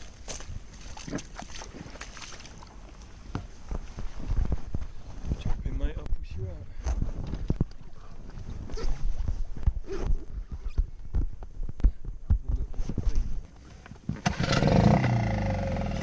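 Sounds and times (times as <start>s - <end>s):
engine starting and running: 14.2s - 16.0s.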